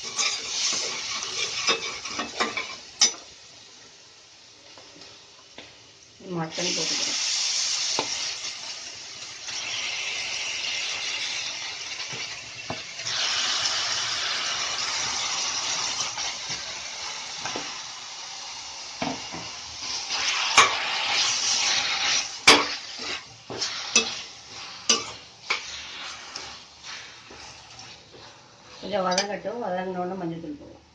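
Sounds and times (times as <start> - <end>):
meat sizzling in hot oil: 0.0 - 29.9
spoon clanking against pan: 29.1 - 29.4.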